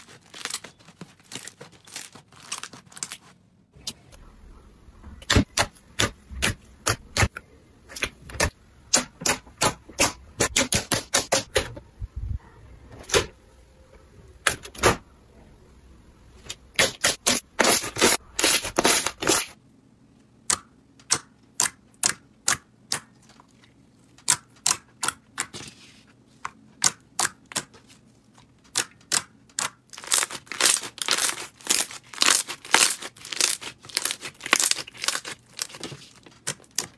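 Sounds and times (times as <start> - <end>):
low background hum: 0.0 - 36.9
slime crackling and popping: 28.7 - 35.9.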